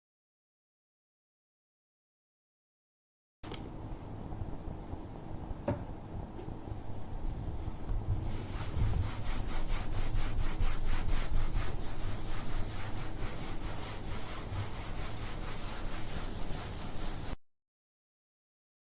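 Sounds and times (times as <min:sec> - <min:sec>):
cloth wiping a surface: 0:07.2 - 0:17.4.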